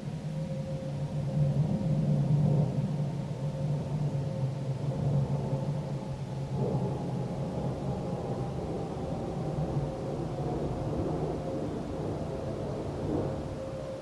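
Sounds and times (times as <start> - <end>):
distant warning siren: 0.0 - 14.0.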